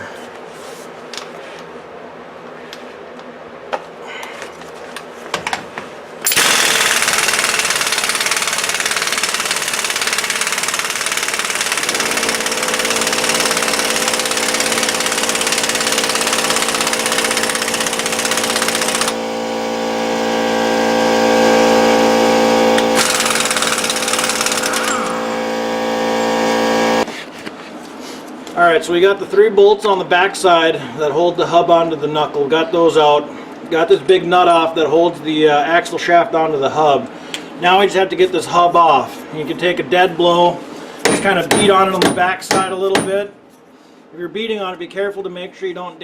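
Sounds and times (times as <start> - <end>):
air impact wrench hammering: 6.2 - 27.1, 41.0 - 43.3
tool humming: 6.3 - 27.1.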